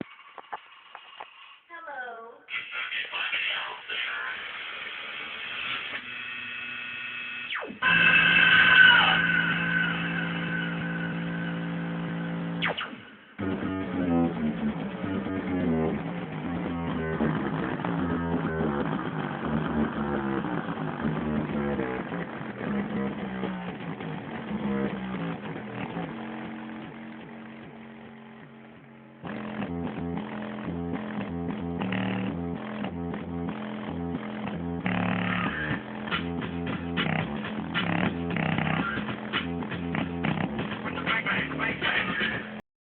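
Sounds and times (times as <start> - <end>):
plucked guitar notes: 13.4 - 20.4
low bass line: 13.4 - 42.0.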